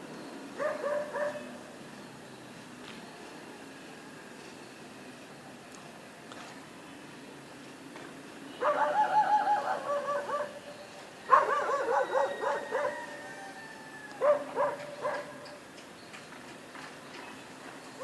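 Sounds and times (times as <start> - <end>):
dogs barking: 0.6 - 1.5, 8.6 - 10.6, 11.3 - 13.1, 14.2 - 15.6.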